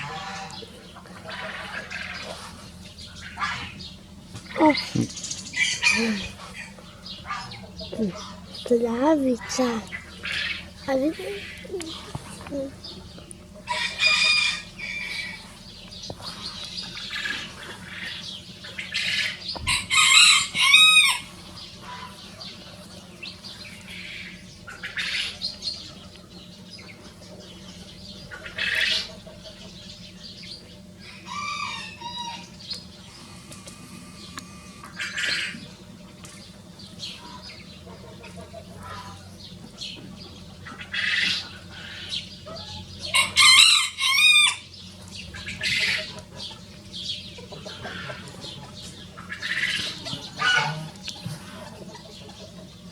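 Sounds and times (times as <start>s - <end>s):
roosters crowing: 0.0s - 8.6s, 13.5s - 22.2s, 30.8s - 35.8s, 40.6s - 52.9s
chicken calls: 0.0s - 8.7s, 9.4s - 52.9s.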